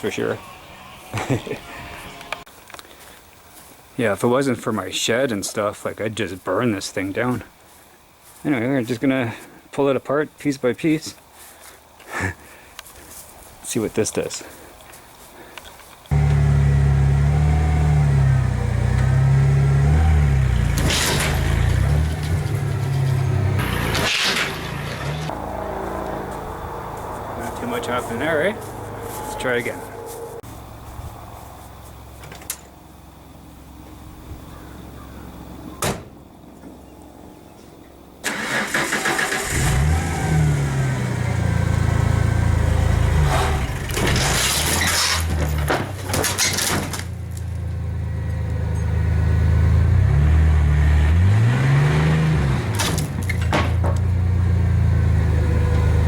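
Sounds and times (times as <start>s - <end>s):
truck engine running hard: 16.1s - 30.4s, 39.3s - 44.2s, 47.2s - 56.0s.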